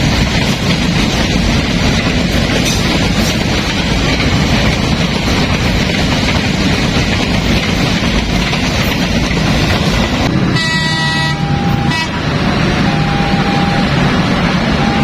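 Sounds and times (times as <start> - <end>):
train rumbling past: 0.0 - 15.0
locomotive horn: 10.4 - 14.0.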